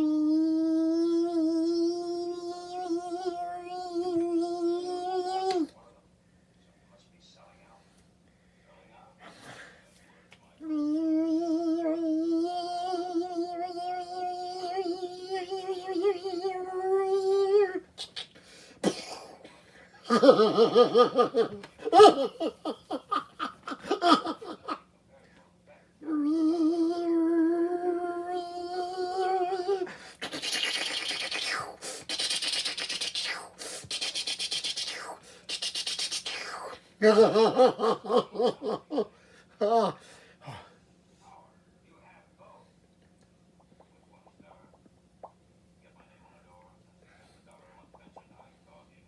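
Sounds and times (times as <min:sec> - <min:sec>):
breathy hissing: 0:29.7 - 0:37.1
rapid fluttering mouth pulses: 0:30.0 - 0:36.8.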